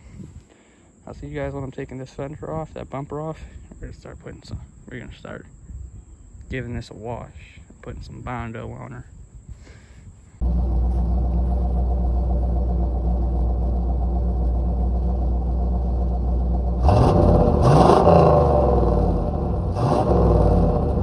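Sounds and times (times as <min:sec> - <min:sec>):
car engine idling and revving: 0:10.4 - 0:21.0.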